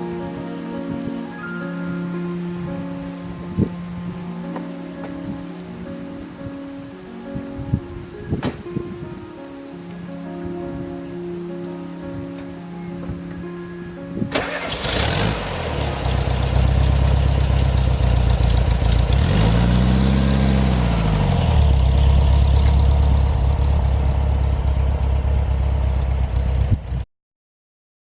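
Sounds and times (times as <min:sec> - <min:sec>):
car engine idling and revving: 0:14.4 - 0:27.0.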